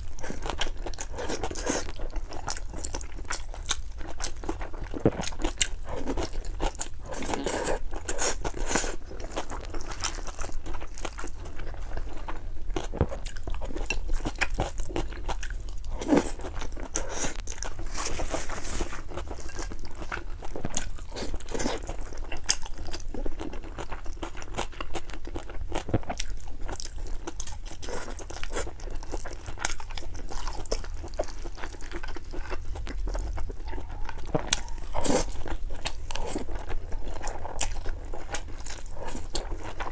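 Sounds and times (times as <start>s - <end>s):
person crunching and chewing: 0.0s - 39.9s.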